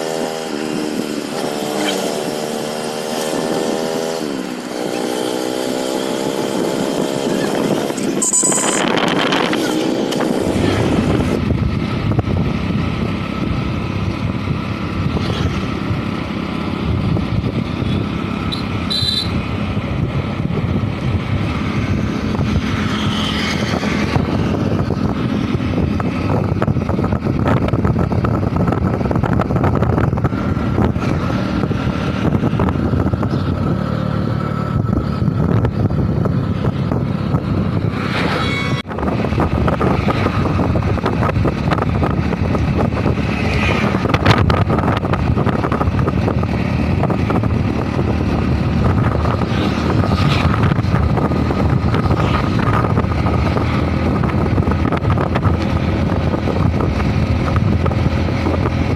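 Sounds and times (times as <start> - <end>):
motor vehicle rumble: 0.0 - 58.9
brief high tone: 8.2 - 8.9.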